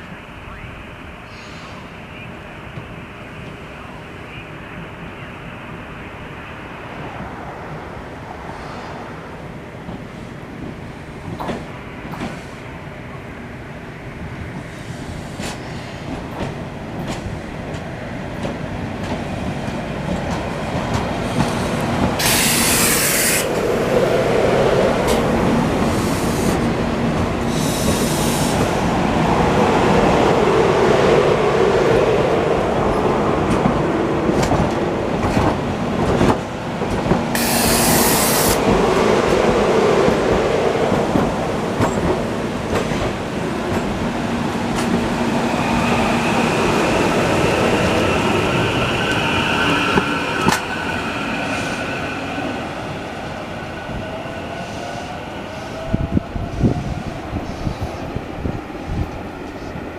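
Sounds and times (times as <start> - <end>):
electric train rumbling on track: 0.0 - 59.9
short bursts of high hiss: 22.2 - 23.5, 37.4 - 38.6.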